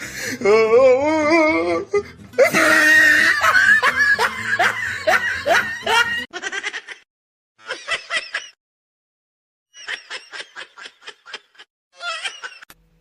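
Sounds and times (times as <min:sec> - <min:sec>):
person laughing: 0:02.0 - 0:07.0, 0:09.8 - 0:12.7.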